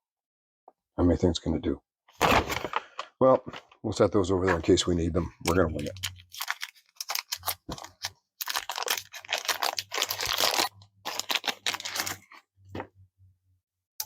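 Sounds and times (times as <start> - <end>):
packaging crinkling: 5.8 - 12.4.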